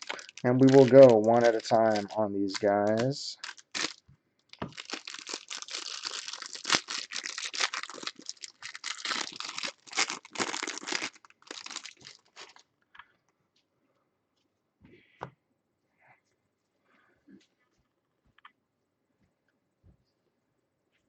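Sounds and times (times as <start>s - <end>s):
plastic wrapper tearing and crinkling: 0.0s - 12.6s.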